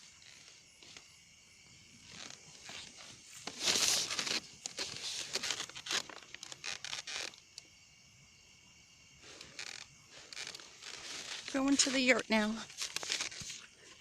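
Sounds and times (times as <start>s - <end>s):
rustling and crackling: 2.0s - 7.4s, 9.2s - 14.0s.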